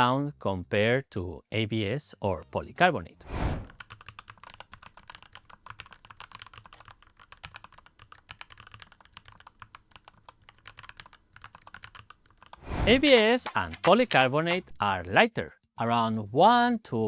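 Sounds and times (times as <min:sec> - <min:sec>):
mechanical keyboard typing: 0:03.8 - 0:14.8.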